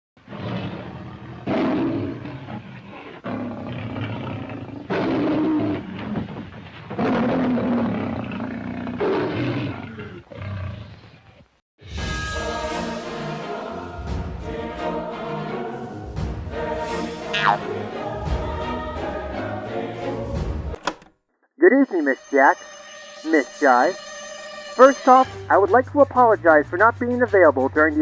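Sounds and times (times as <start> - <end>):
orchestral music: 11.8 - 20.8, 21.8 - 26.4.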